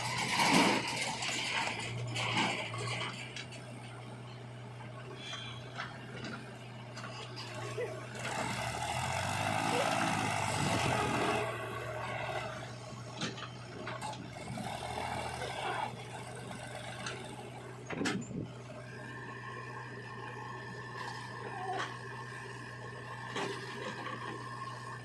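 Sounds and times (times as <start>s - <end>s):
machine engine running: 5.2s - 25.0s.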